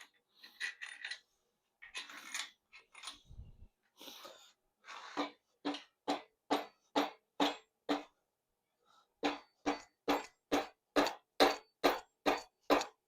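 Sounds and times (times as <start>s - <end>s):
rubber mallet tapping metal: 9.2s - 13.0s.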